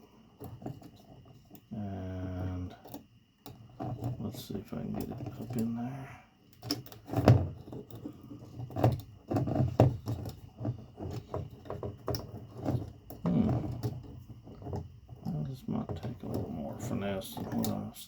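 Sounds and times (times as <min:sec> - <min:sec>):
knocks and clicks on plastic: 0:06.6 - 0:17.8.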